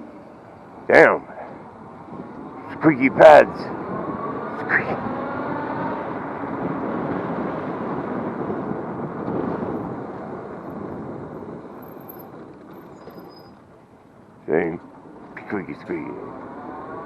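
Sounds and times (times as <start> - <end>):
wind rush and tyre noise: 0.0 - 17.0
brake pads squealing: 11.8 - 13.8.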